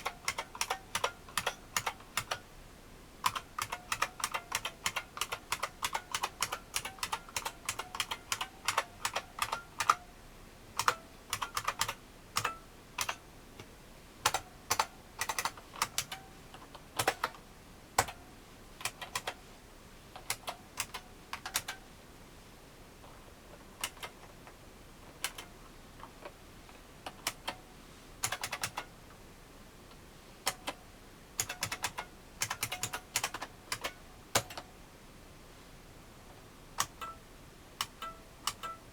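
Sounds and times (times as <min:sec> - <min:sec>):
clicky keyboard typing: 0:00.0 - 0:02.4, 0:03.2 - 0:10.0, 0:10.8 - 0:13.2, 0:14.2 - 0:17.4, 0:18.0 - 0:18.2, 0:18.8 - 0:19.4, 0:20.2 - 0:21.8, 0:23.8 - 0:24.3, 0:25.2 - 0:25.5, 0:28.2 - 0:28.9, 0:31.4 - 0:34.7, 0:36.8 - 0:37.2, 0:37.8 - 0:38.8.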